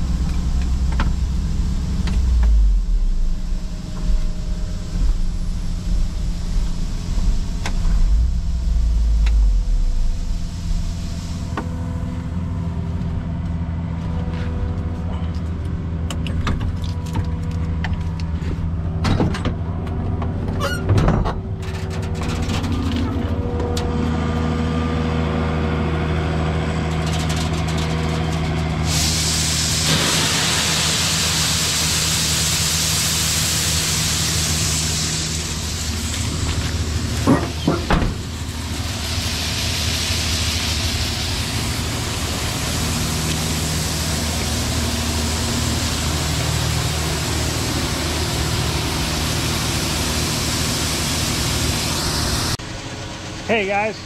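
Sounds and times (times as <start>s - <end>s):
loud steady hiss: 0.0s - 12.5s, 28.8s - 52.6s
truck engine running: 0.0s - 20.7s, 21.3s - 54.0s.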